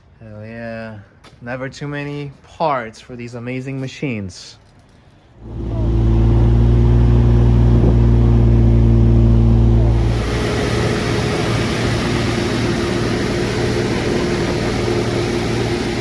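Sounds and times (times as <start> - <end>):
broad rushing noise: 5.4 - 16.0
car engine hum: 5.4 - 16.0.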